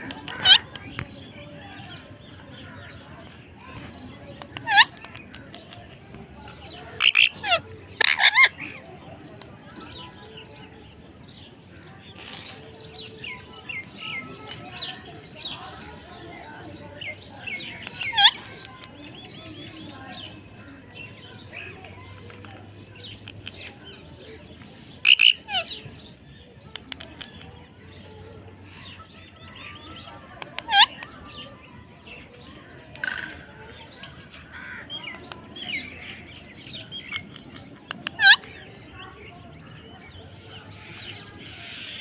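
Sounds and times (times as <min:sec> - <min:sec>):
parrot chirping and squeaking: 0:07.0 - 0:08.5, 0:25.0 - 0:25.7
parrot shrieks: 0:07.0 - 0:08.5, 0:25.0 - 0:25.7.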